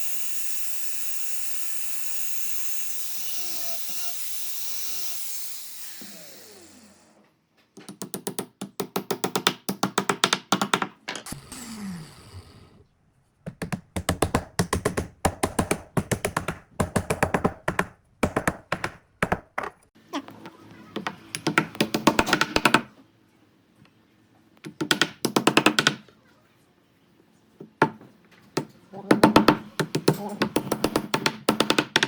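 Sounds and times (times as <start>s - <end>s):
rapid sharp knocks: 13.4s - 19.7s.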